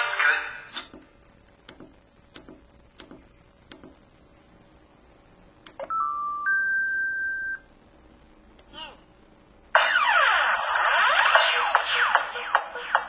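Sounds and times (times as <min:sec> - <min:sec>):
electronic beep tone: 0:05.8 - 0:07.7.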